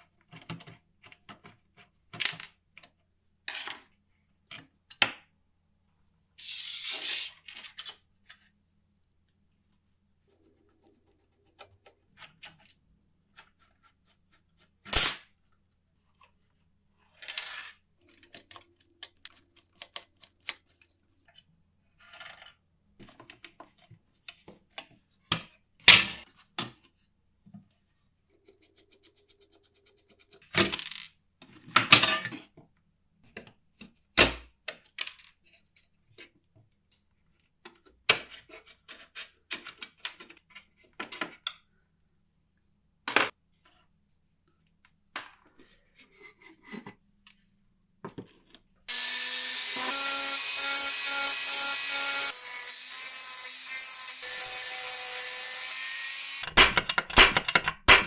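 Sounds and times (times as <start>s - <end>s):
clicks knocks and scraping: 18.0s - 21.0s
small electric motor tool: 48.9s - 56.5s.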